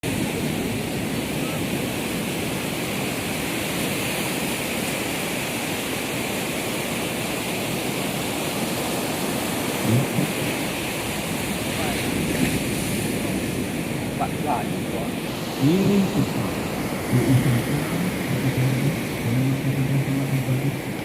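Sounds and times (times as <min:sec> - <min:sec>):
sea surf rushing: 0:00.0 - 0:21.0.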